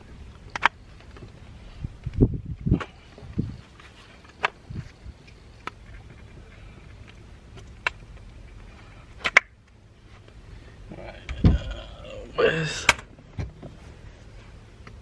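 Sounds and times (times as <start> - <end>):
clicks of steering wheel parts: 9.2 - 10.4.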